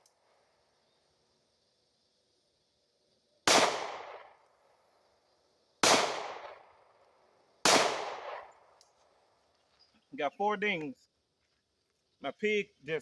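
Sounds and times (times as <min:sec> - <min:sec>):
pistol shots: 0:03.5 - 0:04.4, 0:05.8 - 0:06.7, 0:07.6 - 0:08.5.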